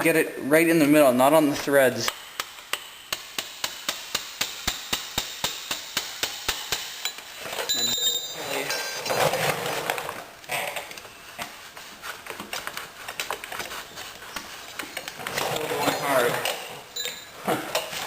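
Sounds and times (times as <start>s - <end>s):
short metallic ring: 7.0s - 8.4s
rattling scraping handling noise: 14.4s - 18.0s.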